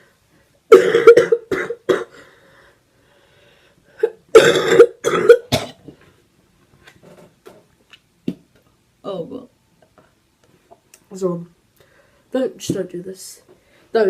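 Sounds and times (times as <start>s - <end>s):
person coughing hard: 0.7s - 2.2s, 4.0s - 5.9s.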